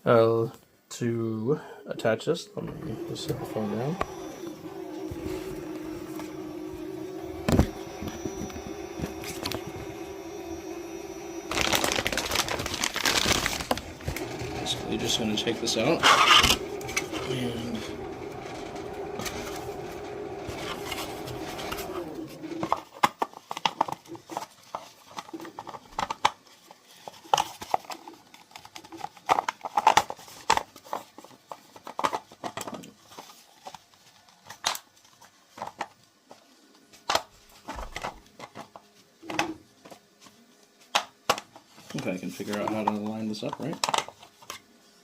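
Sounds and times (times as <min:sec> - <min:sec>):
steady mechanical hum: 0:01.3 - 0:24.0
plastic parts clicking and tapping: 0:22.6 - 0:36.4, 0:40.9 - 0:44.7.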